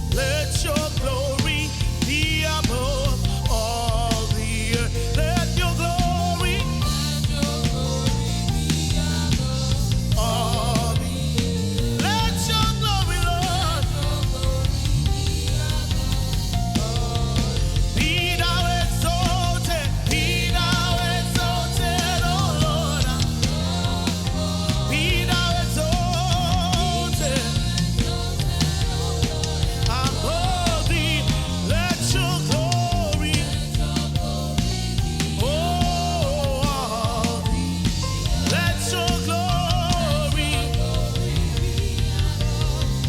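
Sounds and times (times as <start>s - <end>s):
band with drums and bass: 0.0s - 43.0s
person singing with vibrato: 0.0s - 43.0s.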